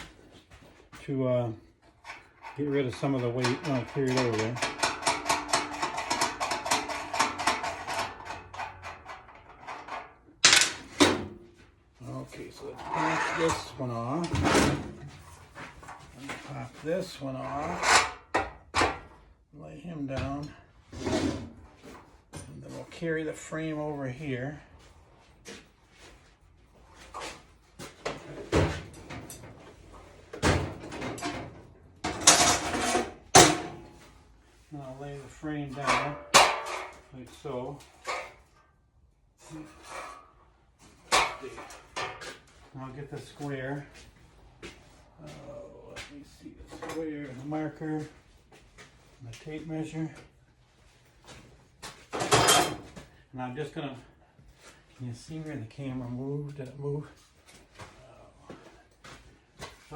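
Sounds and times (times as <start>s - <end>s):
steel frame knocking and clunking: 2.0s - 11.6s, 30.3s - 34.1s, 35.8s - 37.1s, 40.9s - 42.6s.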